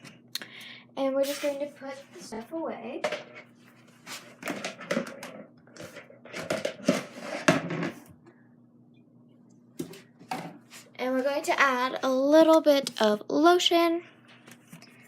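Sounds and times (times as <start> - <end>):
knocks clicks and rustles on tabletop: 4.4 - 8.0.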